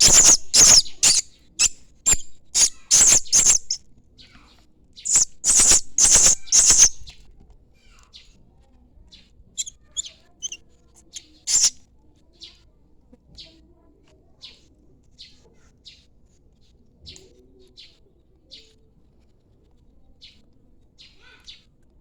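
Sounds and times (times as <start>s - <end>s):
nestling starlings chirping: 0.0s - 3.8s, 5.0s - 7.1s, 11.5s - 11.8s.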